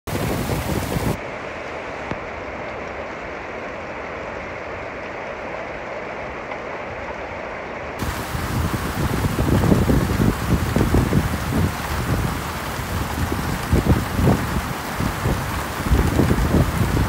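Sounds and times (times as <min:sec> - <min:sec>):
wind gusting on microphone: 0:00.1 - 0:01.2, 0:08.0 - 0:17.0
steady rain: 0:00.1 - 0:17.0.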